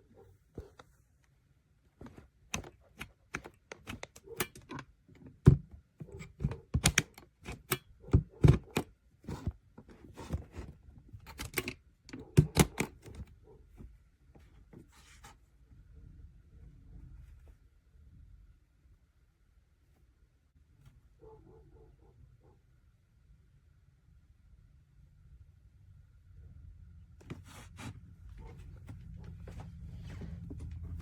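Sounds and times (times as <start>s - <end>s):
hard objects clicking and knocking: 2.0s - 13.3s.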